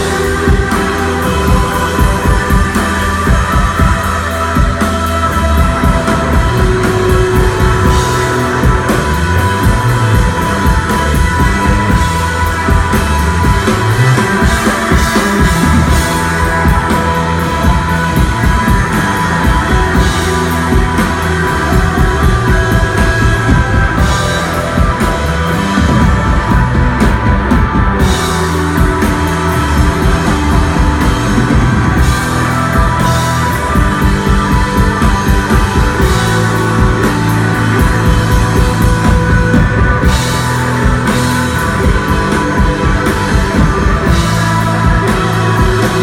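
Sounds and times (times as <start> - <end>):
bass guitar: 0.0 - 46.0
drum kit beat with cymbals: 0.0 - 46.0
electric guitar: 0.0 - 46.0.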